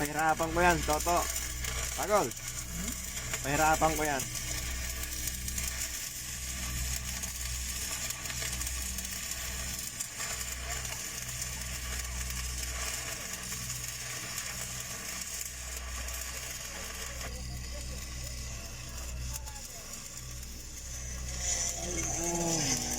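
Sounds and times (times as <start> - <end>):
low machine hum: 0.0 - 22.9
welding arc crackling: 0.0 - 22.9.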